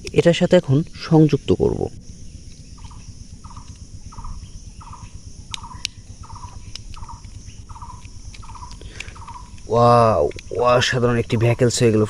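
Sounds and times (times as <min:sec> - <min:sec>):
animal calling: 0:02.4 - 0:12.0.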